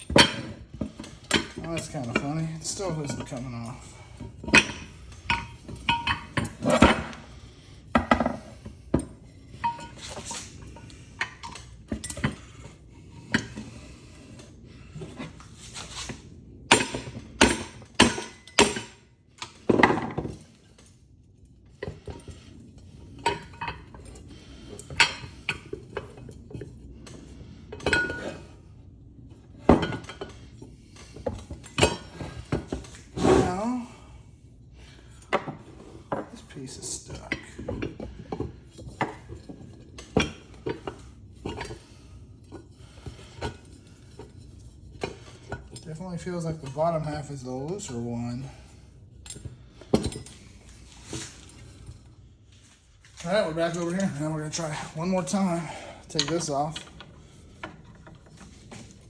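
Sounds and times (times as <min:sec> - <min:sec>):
metal tools clinking on metal: 0:00.0 - 0:07.3, 0:08.0 - 0:12.4, 0:27.8 - 0:28.5, 0:53.1 - 0:59.0.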